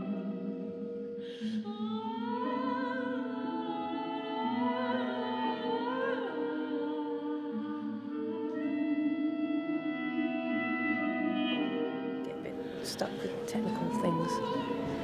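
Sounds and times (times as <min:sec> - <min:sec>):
operatic high voice singing: 0:00.0 - 0:15.0
sustained held chords: 0:09.8 - 0:15.0.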